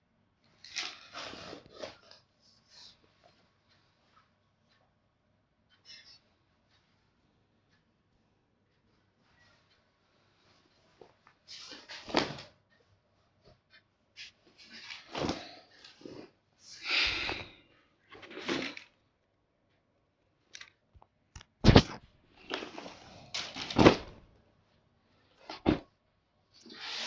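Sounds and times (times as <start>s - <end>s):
rustling and handling: 20.4s - 26.8s.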